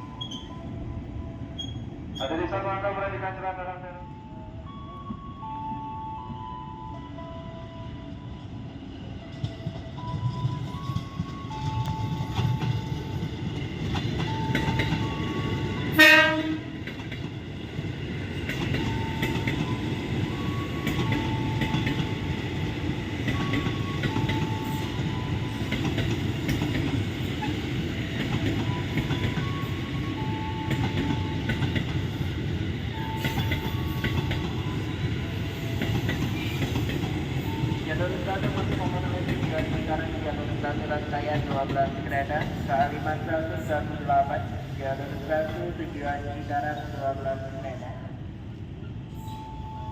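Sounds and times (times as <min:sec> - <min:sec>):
train rumbling past: 0:00.0 - 0:49.9
train horn blast: 0:15.7 - 0:16.8.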